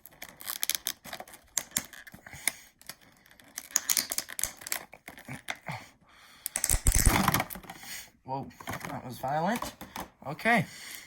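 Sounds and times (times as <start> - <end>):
packaging crinkling and scraping: 0.0 - 5.6.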